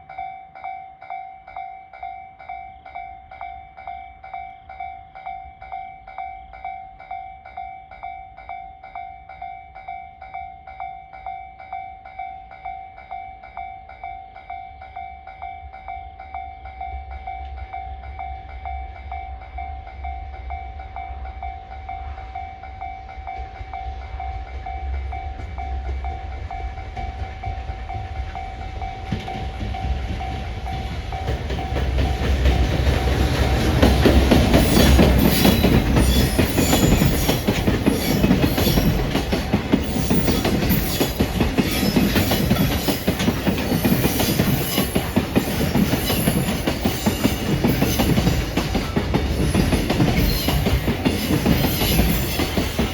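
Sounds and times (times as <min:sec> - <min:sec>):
freight train rumble: 0:14.9 - 0:52.9.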